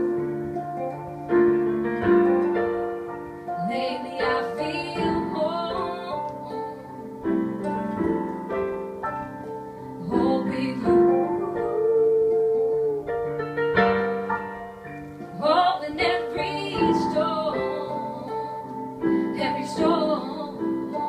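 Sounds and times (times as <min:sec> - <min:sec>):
slow piano chords: 0:00.0 - 0:21.0
woman singing: 0:03.5 - 0:07.1, 0:10.0 - 0:13.1, 0:15.3 - 0:21.0.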